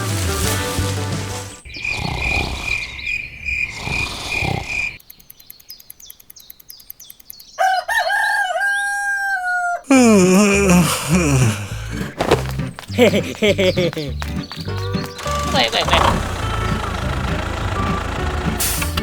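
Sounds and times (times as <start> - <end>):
rooster crowing: 7.6 - 9.9.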